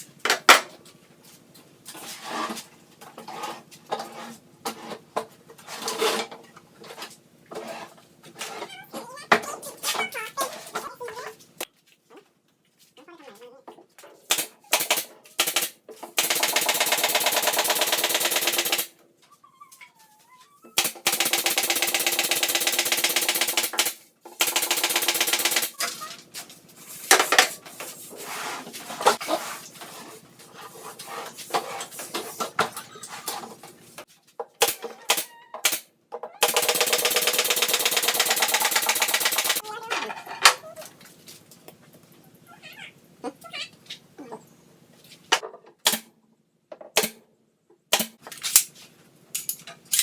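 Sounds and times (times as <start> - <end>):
power tool rattling: 16.2 - 18.9, 20.8 - 26.0, 36.4 - 39.6.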